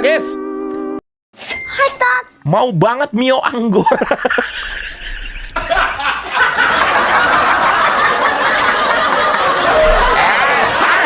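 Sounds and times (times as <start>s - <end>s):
person laughing: 3.6s - 6.6s.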